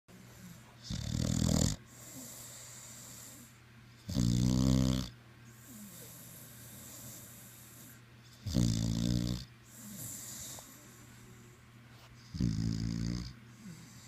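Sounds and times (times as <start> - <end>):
quiet breathing: 0.1 - 0.9, 1.8 - 4.0, 5.4 - 8.4, 9.6 - 12.6, 13.2 - 14.0
loud snoring: 0.9 - 2.5, 4.1 - 5.1, 8.4 - 10.6, 12.3 - 14.0.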